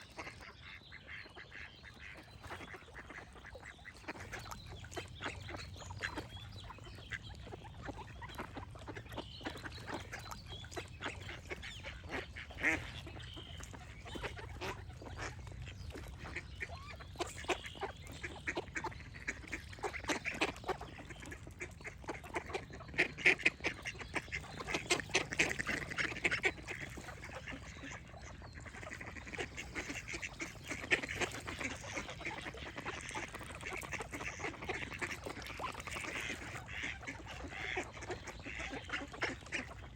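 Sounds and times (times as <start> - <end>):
ducks quacking: 0.0 - 39.9.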